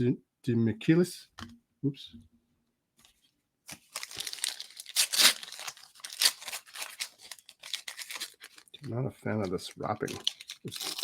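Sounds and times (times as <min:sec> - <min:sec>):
card pack wrapper tearing: 0:03.7 - 0:08.9, 0:09.5 - 0:11.0.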